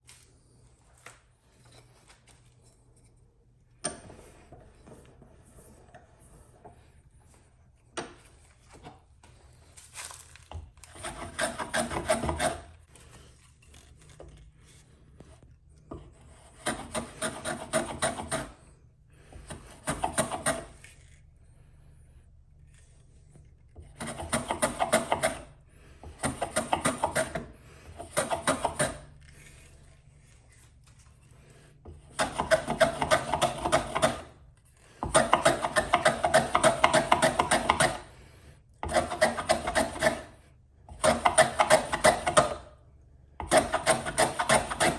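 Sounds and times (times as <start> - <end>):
saw rasping through wood: 10.8 - 12.8, 16.1 - 21.2, 23.8 - 29.9, 31.4 - 42.7, 43.4 - 44.9.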